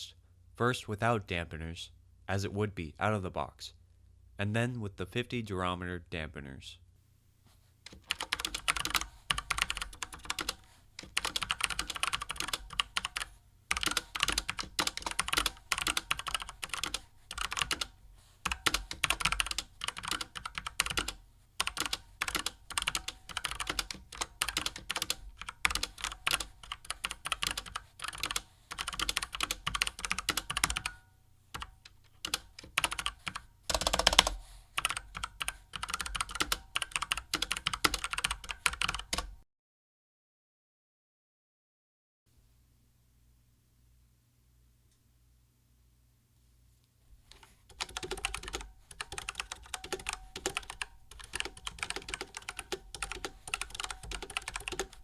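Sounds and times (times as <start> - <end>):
typing on mechanical keyboard: 7.9 - 31.0, 31.6 - 39.3, 47.7 - 55.0.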